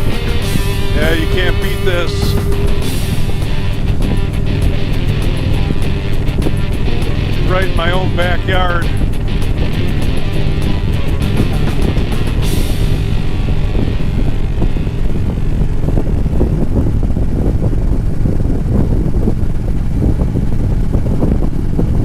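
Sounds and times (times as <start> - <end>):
motorcycle engine running: 0.0 - 22.0
wind noise on microphone: 0.0 - 22.0.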